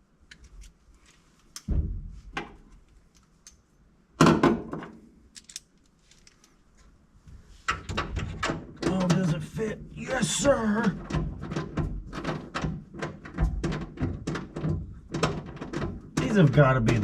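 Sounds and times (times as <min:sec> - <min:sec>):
light clicks and jangles: 0:05.3 - 0:06.6.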